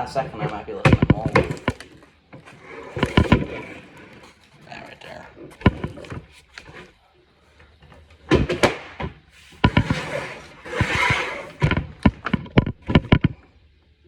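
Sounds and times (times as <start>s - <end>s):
knocks and clicks of handling: 0.9s - 4.3s, 7.8s - 10.1s, 10.8s - 13.4s
rustling scrape: 2.4s - 4.7s, 9.3s - 11.7s.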